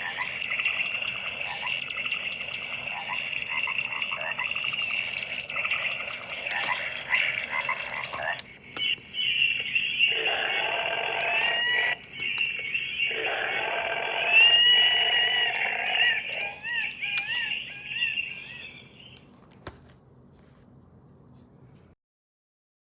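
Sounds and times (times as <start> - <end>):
shrill animal call with rising cries: 9.1 - 19.2.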